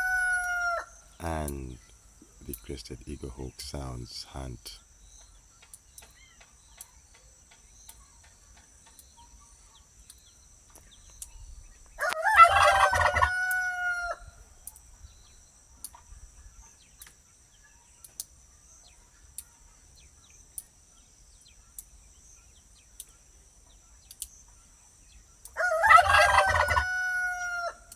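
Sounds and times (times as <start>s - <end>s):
rooster crowing: 0.0s - 1.4s, 12.0s - 14.4s, 25.6s - 27.9s.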